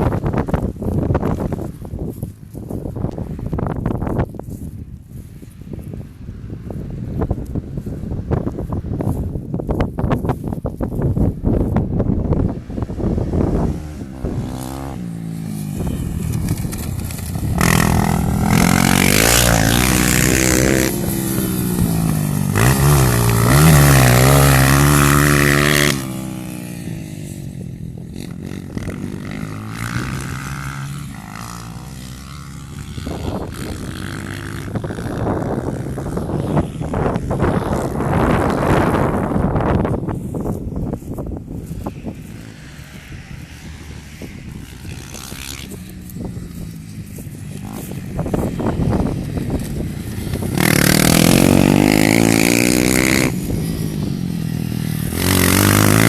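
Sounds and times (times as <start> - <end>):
wind noise on microphone: 0.0 - 56.0
dirt bike engines revving: 12.3 - 56.0.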